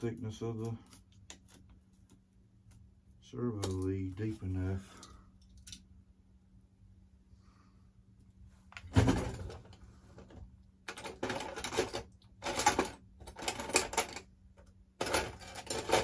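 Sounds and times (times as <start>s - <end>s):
hand tools clattering in toolbox: 15.0s - 16.0s.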